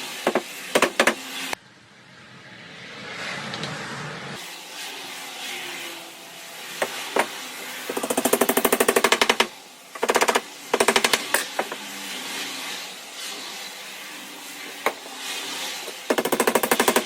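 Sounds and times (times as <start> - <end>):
power tool hammering rapidly: 0.2 - 1.2, 7.9 - 11.8, 16.1 - 17.0.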